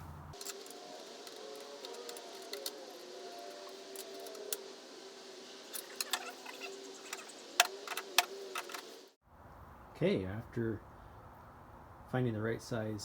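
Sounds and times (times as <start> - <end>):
faint wavering hum: 0.0 - 9.2.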